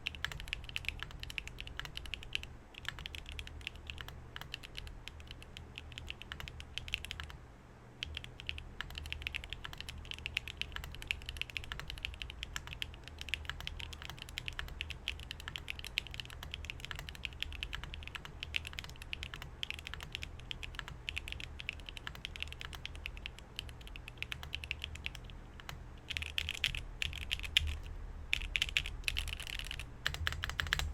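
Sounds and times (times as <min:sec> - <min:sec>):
mechanical keyboard typing: 0:00.0 - 0:07.4, 0:08.0 - 0:30.9.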